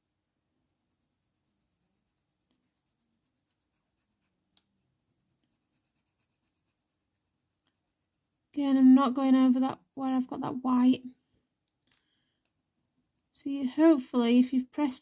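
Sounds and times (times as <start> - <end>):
pencil scratching on paper: 0.6 - 10.9, 12.4 - 14.0.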